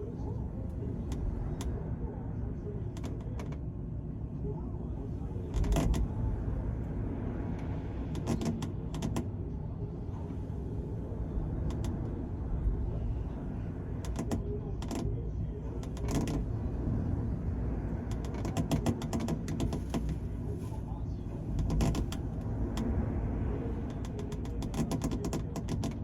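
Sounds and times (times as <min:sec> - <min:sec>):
ship engine rumble: 0:00.0 - 0:26.0
water along the hull: 0:00.0 - 0:26.0.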